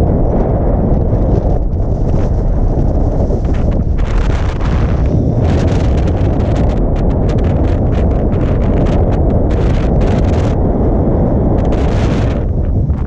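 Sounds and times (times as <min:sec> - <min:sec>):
wind buffeting microphone: 0:00.0 - 0:13.0
tent fabric flapping: 0:01.0 - 0:10.6.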